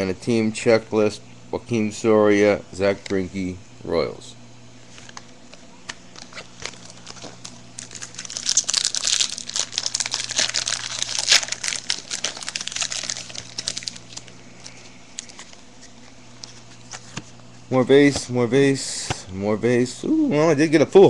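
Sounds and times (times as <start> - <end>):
plastic wrapper crinkling: 5.9 - 17.1.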